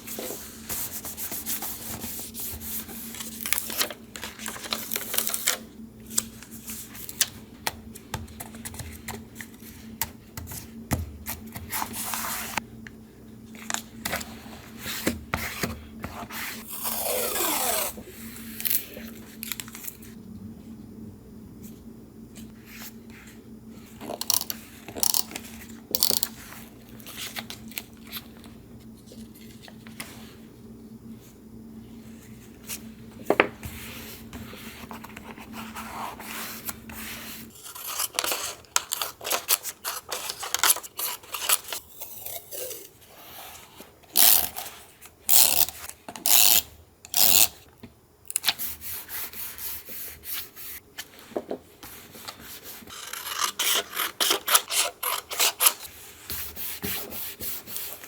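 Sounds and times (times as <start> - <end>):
paper rustling and scraping: 11.5 - 12.6.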